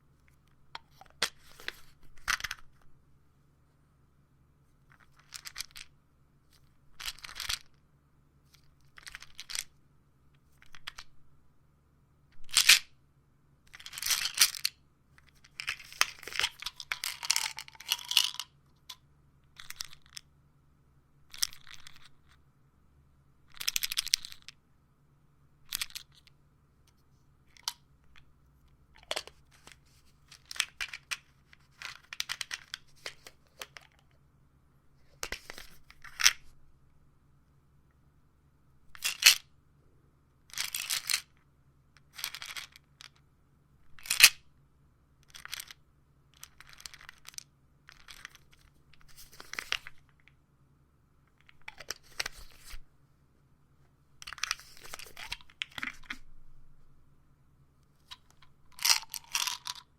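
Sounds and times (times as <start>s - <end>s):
pills rattling in plastic bottle: 4.9s - 5.9s, 7.0s - 7.7s, 13.7s - 19.0s, 29.0s - 34.0s, 40.5s - 41.3s, 42.1s - 43.2s, 45.3s - 50.3s, 51.4s - 52.8s, 54.2s - 56.3s, 58.0s - 59.9s.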